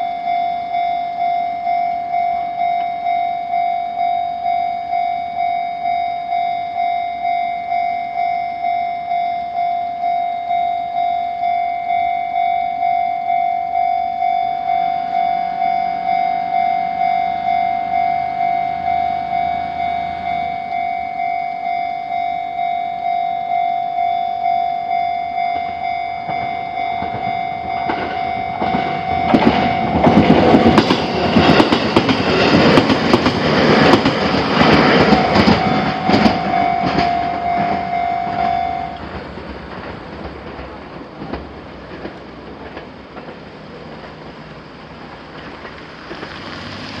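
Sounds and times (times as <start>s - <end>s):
level-crossing warning bell: 0.0s - 46.2s
train wheels clattering over rails: 26.2s - 47.0s.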